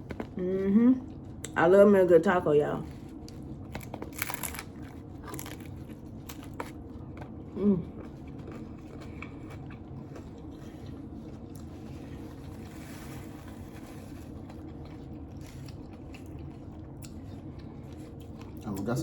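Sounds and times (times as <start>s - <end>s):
crunching taco bites: 3.1s - 19.0s
person humming: 7.6s - 7.9s.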